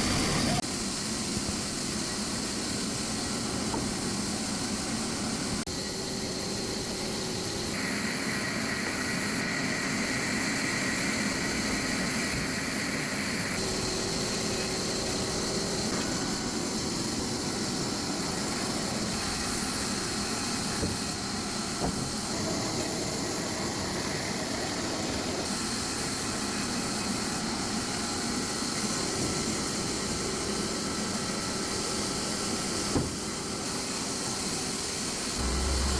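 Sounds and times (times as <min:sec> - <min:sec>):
sawmill saw cutting a log: 0:08.2 - 0:33.4, 0:35.2 - 0:35.9.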